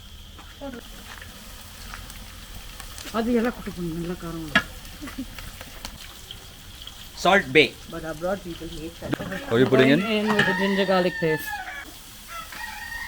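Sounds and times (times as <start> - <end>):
spices sizzling in hot oil: 0.0 - 13.0
person speaking: 7.2 - 11.5.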